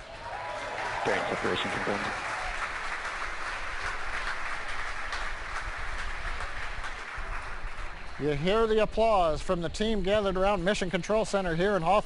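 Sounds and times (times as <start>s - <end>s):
many hands clapping: 0.0s - 9.2s.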